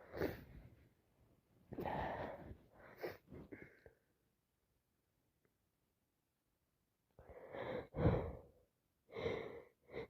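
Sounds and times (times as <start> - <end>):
person sniffing congested nose: 0.0 - 0.6.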